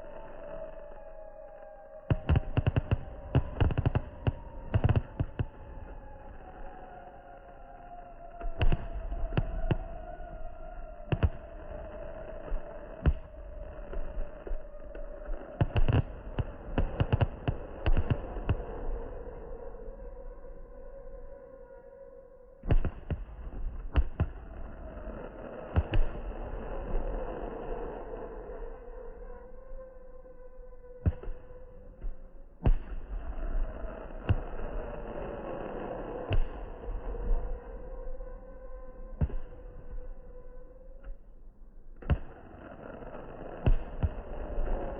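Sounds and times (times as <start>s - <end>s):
fireworks bangs: 2.1s - 6.7s, 11.0s - 18.8s, 22.6s - 27.6s, 42.0s - 44.9s
fireworks crackling: 2.1s - 6.8s, 11.1s - 18.8s.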